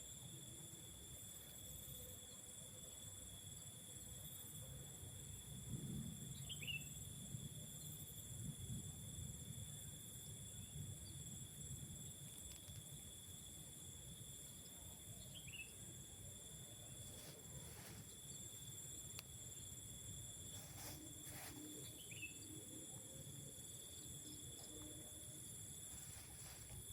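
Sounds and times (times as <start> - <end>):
forest insects chorus: 0.0 - 26.9.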